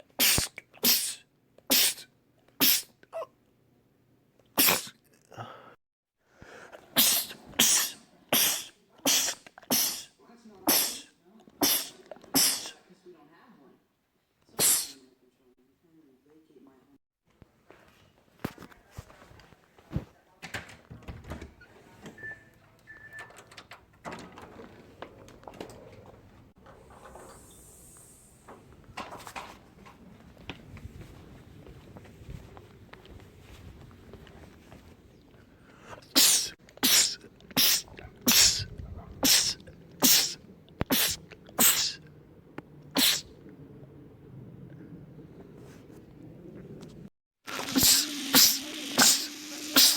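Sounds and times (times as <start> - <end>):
man sneezing: 0.1 - 3.3, 4.6 - 5.6, 6.9 - 12.8, 14.6 - 15.1, 36.1 - 42.0, 43.0 - 43.3, 47.7 - 49.9.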